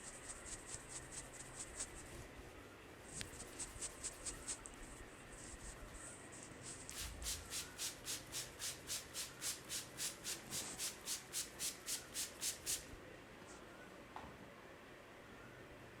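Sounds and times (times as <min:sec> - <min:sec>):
hands rubbing hair: 0:06.4 - 0:12.9.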